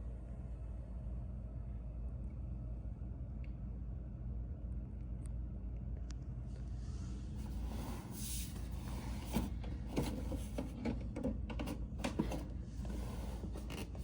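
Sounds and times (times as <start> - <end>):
steady low hum: 0.0 - 14.0
vcr mechanical clicks and clunks: 9.1 - 14.0.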